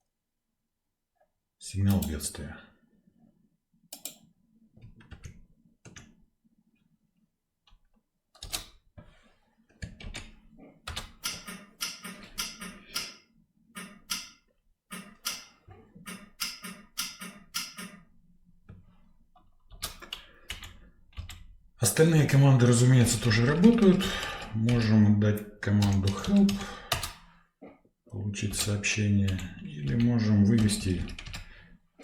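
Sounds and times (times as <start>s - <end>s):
computer keyboard typing: 9.8s - 13.2s, 13.8s - 18.1s, 19.7s - 21.5s, 23.0s - 25.0s, 25.7s - 27.3s, 28.5s - 31.6s.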